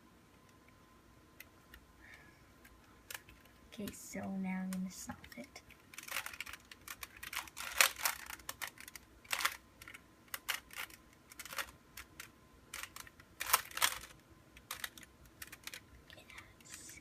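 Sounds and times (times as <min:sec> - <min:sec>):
puzzle cube plastic clicks: 0:01.4 - 0:04.0, 0:04.6 - 0:17.0.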